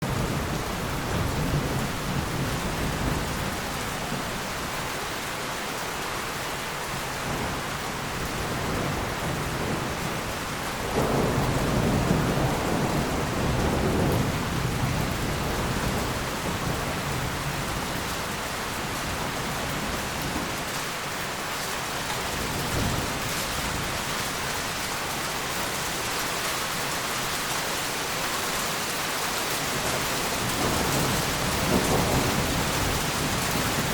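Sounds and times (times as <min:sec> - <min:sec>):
rolling thunder: 0:00.0 - 0:04.9, 0:07.2 - 0:20.7, 0:29.7 - 0:33.9
heavy rain: 0:00.0 - 0:33.9.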